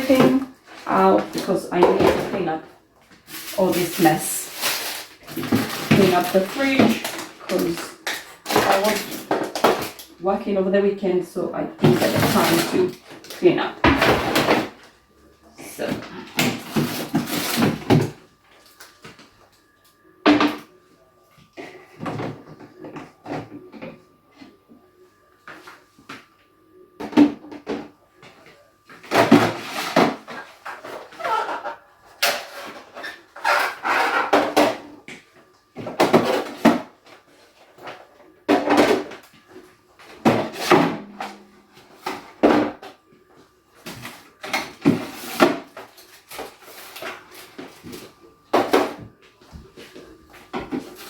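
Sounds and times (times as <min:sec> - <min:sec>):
containers clattering: 0:00.0 - 0:10.2.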